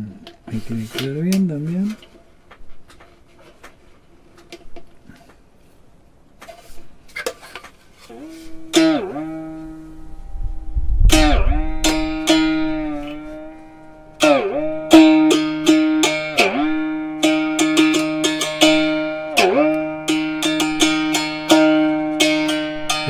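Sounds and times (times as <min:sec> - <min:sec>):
plucked single-string drone instrument: 0:08.1 - 0:23.0.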